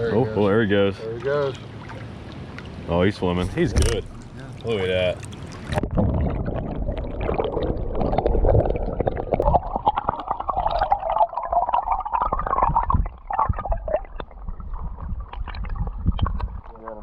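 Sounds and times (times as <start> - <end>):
water gurgling and sloshing: 0.0 - 17.0
small splashes: 1.0 - 6.0.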